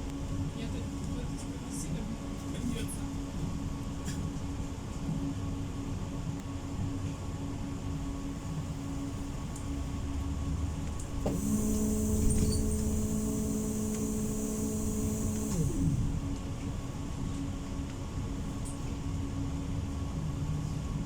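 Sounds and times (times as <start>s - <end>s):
tram low rumble: 0.0s - 21.0s
electrical whine with hiss: 11.3s - 16.2s.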